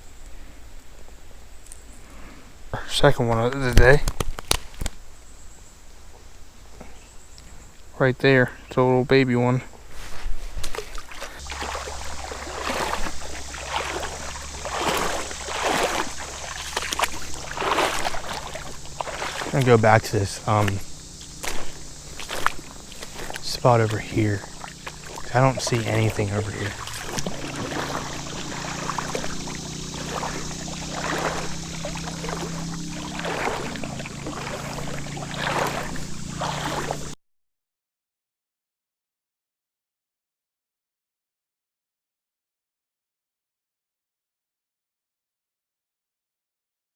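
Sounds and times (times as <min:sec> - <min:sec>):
steady low hum: 0:00.0 - 0:37.2
creek water sloshing and splashing: 0:09.8 - 0:37.2.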